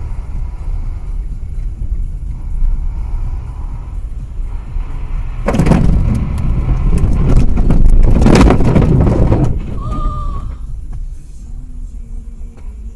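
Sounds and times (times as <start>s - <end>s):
road and engine rumble: 0.0s - 12.9s
crunching crash impact: 5.4s - 10.0s.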